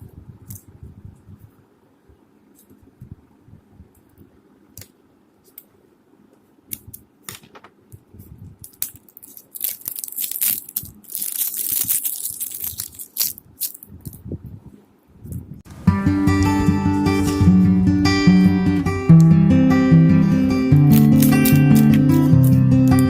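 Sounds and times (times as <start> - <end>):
crinkling and crackling: 6.7 - 15.6, 20.8 - 23.0.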